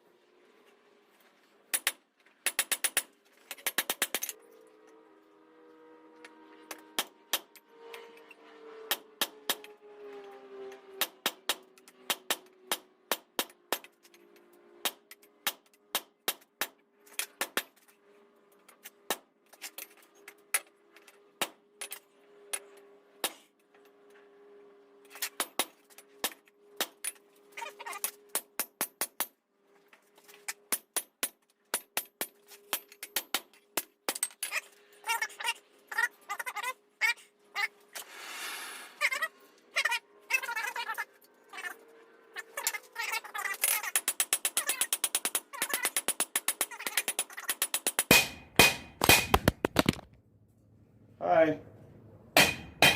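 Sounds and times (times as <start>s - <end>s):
hammer striking hot steel: 47.8s - 49.6s, 52.4s - 52.9s.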